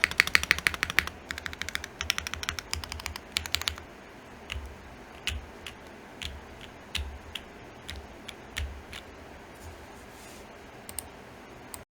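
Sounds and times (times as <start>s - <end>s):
mechanical keyboard keystrokes: 0.0s - 3.8s, 4.5s - 9.1s.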